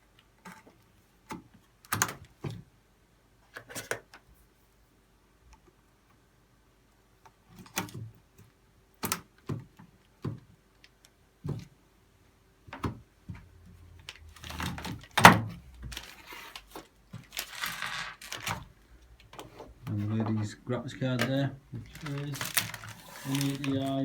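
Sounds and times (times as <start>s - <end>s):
scraping and rustling: 14.1s - 18.7s, 19.3s - 24.0s.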